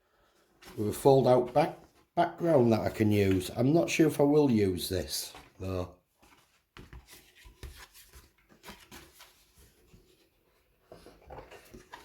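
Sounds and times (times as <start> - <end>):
paper rustling and tapping: 2.6 - 3.8, 6.2 - 10.2, 10.9 - 12.0.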